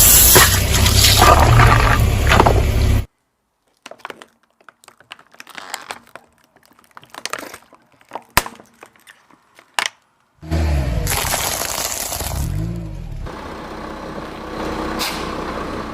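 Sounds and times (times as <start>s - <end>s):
brittle crackling as crushed: 3.6s - 10.2s, 11.0s - 12.5s.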